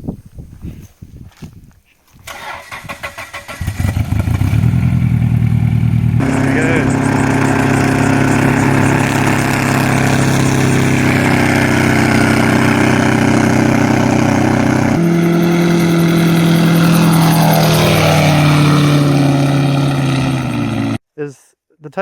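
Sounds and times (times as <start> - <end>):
gyrocopter engine and propeller: 5.9 - 21.0.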